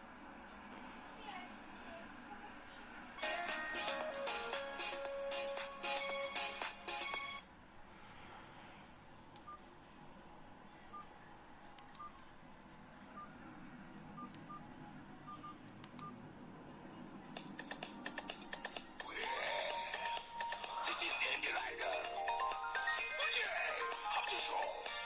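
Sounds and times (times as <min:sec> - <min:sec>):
phone ringtone: 0:19.7 - 0:25.0.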